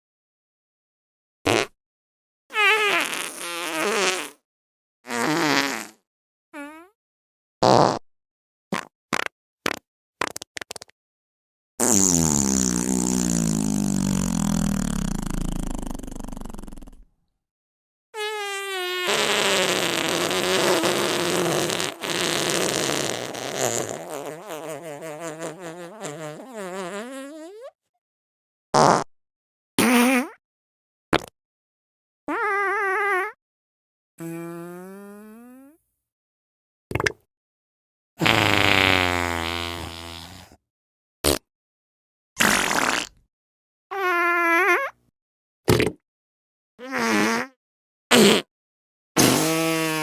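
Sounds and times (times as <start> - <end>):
fart sound effects: 1.5 - 1.8, 2.6 - 4.4, 5.1 - 6.0, 7.6 - 8.0, 8.7 - 10.9, 11.8 - 17.0, 18.2 - 27.8, 28.8 - 29.1, 38.2 - 40.6, 42.4 - 43.2, 46.8 - 48.5, 49.2 - 50.0.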